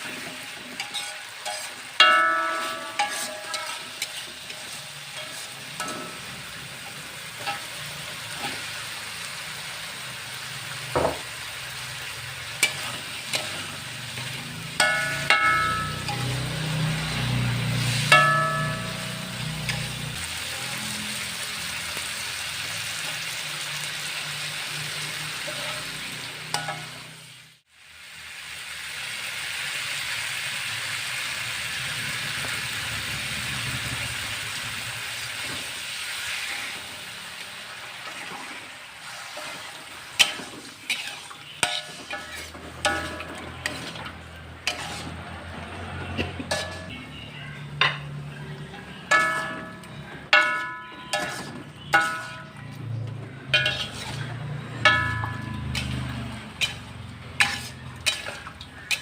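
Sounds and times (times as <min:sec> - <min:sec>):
utensils clinking on cookware: 0:00.0 - 0:09.2, 0:10.8 - 0:22.0, 0:25.0 - 0:27.3, 0:38.0 - 0:59.0
food sizzling in a pan: 0:00.0 - 0:59.0.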